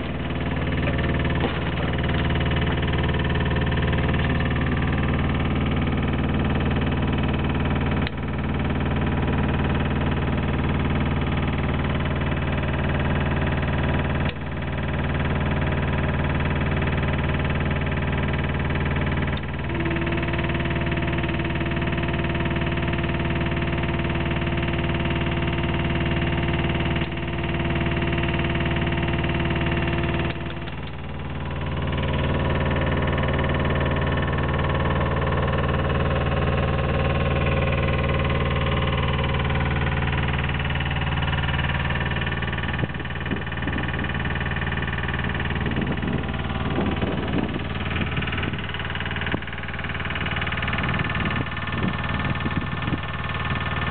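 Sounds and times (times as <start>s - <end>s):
steady whine: 0.0s - 8.2s
drilling rig engine running: 0.0s - 53.9s
click: 30.3s - 31.0s.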